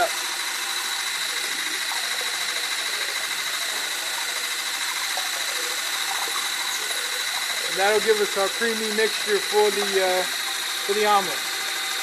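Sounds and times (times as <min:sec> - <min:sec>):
motor humming with high whine: 0:00.0 - 0:12.0.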